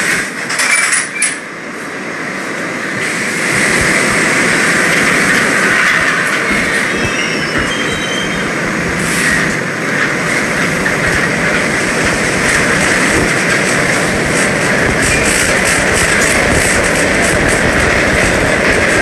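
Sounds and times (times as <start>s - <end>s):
subway train rumbling on rails: 0.0s - 19.0s
high wheel squeals: 4.8s - 11.8s.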